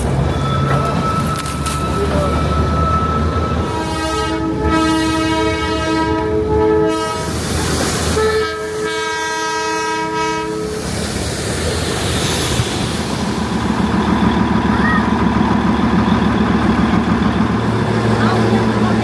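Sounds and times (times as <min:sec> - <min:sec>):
train rumble: 0:00.0 - 0:19.0
train horn blasts: 0:03.6 - 0:07.4, 0:08.1 - 0:10.8.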